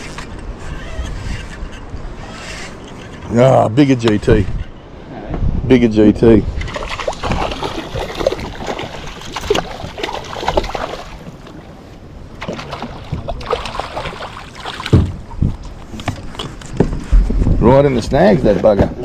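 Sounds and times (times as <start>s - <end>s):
wind buffeting microphone: 0.0s - 19.0s
water slapping boat hull: 6.5s - 17.6s.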